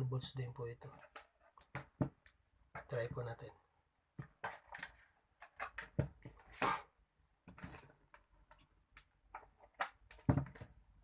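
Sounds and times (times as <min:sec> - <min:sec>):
hands handling cables clicking: 0:07.7 - 0:10.7.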